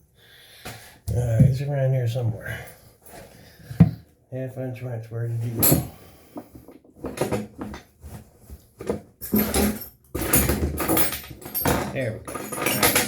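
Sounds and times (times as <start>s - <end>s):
metal tools clattering: 9.2s - 13.0s.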